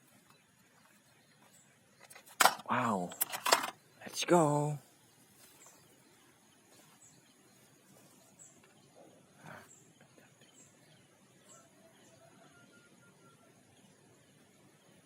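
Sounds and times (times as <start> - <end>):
faint high animal chirp: 8.0 - 13.8.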